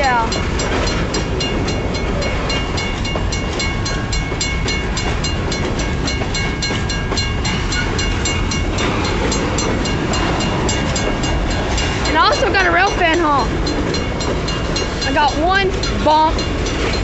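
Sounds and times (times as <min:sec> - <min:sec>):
freight train rumbling past: 0:00.0 - 0:17.0
level-crossing bell ringing: 0:00.0 - 0:17.0.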